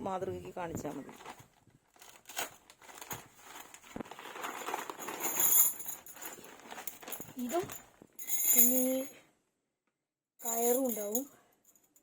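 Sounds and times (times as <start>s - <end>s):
fabric bag rustling: 1.0s - 7.9s.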